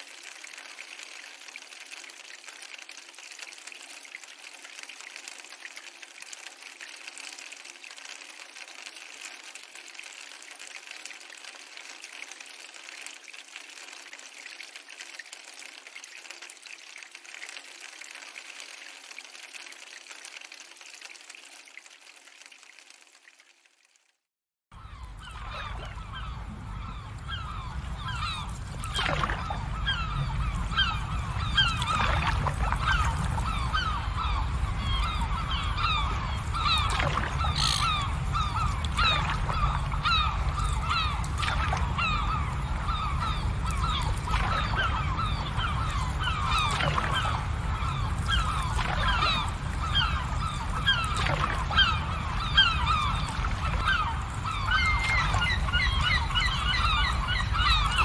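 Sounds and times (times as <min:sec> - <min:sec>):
flock of birds honking: 0:24.8 - 0:58.0
steady low rumble: 0:25.0 - 0:46.6.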